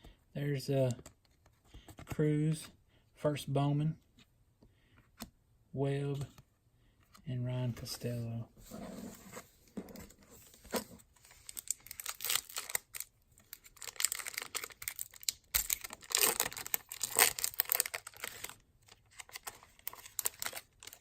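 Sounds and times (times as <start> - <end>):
wrapper crinkling and tearing: 11.3 - 21.0.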